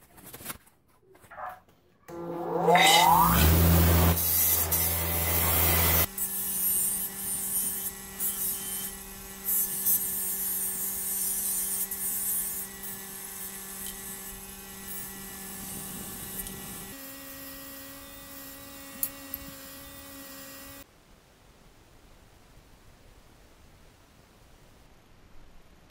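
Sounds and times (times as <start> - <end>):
small electric motor humming: 2.1 - 20.8.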